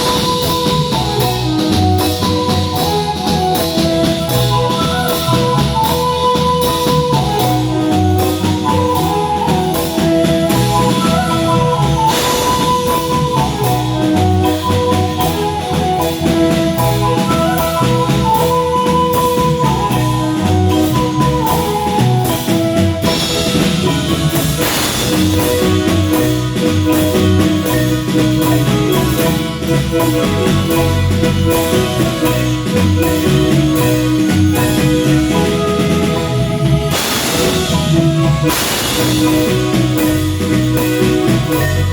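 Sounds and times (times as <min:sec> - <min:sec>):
drum kit: 0:00.0 - 0:41.9
low bass notes: 0:00.0 - 0:41.9
marimba playing: 0:00.0 - 0:41.9
cymbal crashes: 0:23.1 - 0:35.4, 0:36.2 - 0:41.9.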